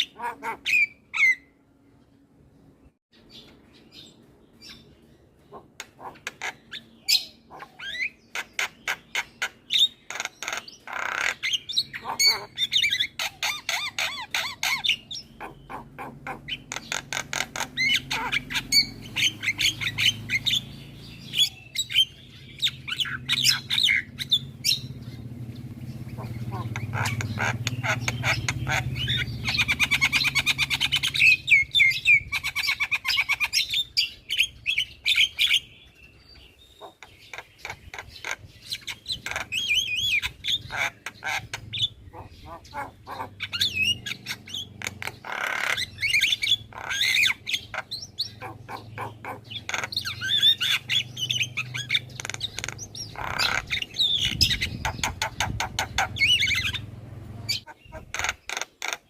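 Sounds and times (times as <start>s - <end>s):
myna chattering: 25.8s - 31.6s, 36.8s - 56.8s, 57.5s - 58.6s.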